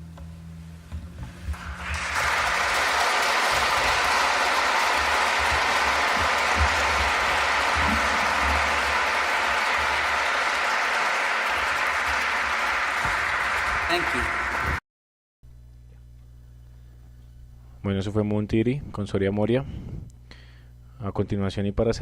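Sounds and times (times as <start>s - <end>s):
audience applause: 1.5s - 14.8s.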